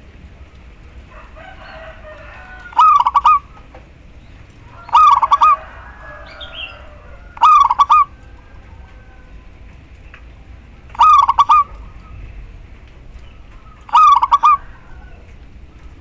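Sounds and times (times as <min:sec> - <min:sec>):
dove rapid staccato cooing: 0:01.2 - 0:09.6, 0:10.8 - 0:12.3, 0:13.4 - 0:16.0
faint bird calls: 0:01.9 - 0:10.3, 0:10.9 - 0:16.0.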